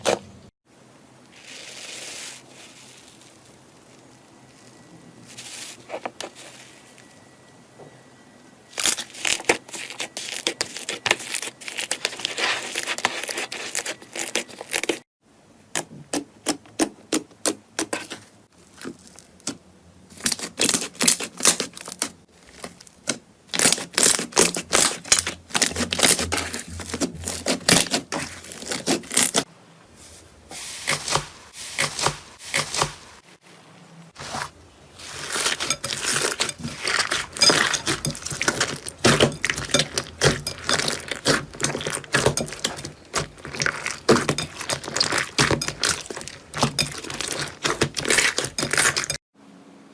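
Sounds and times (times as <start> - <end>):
slime crackling and popping: 35.2 - 49.2.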